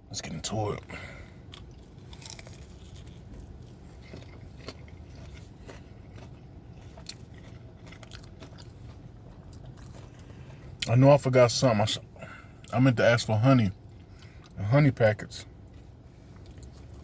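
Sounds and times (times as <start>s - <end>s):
chewing crispy chicken crunches: 0.9s - 10.9s, 15.6s - 17.0s.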